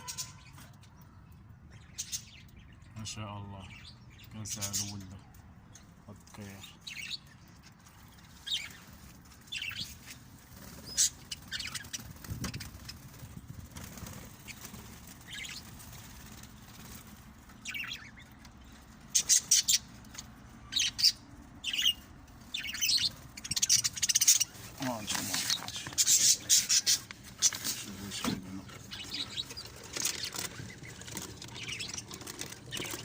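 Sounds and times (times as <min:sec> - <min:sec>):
small birds chirping: 0:00.0 - 0:33.0
wings fluttering: 0:07.6 - 0:33.0.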